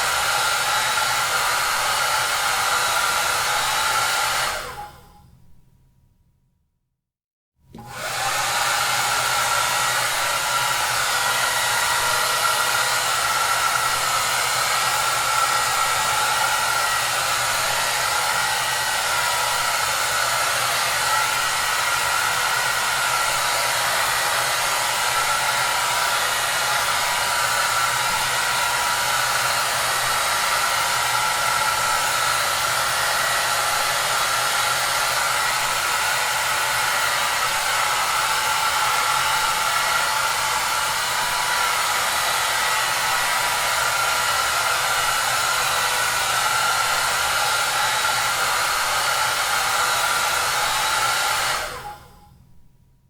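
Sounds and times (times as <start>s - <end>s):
hair dryer running: 0.0s - 5.2s, 7.7s - 52.3s.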